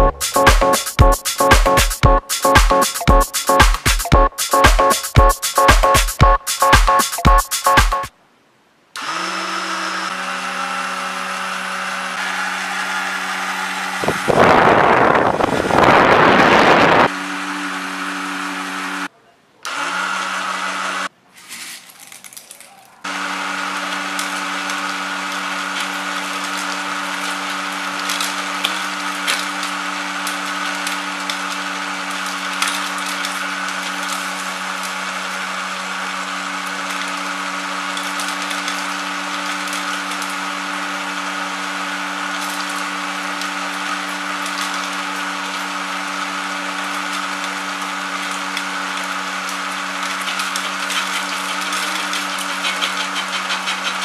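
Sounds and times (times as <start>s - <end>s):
machine humming: 0.0s - 8.1s
seeds cracking: 21.3s - 23.0s.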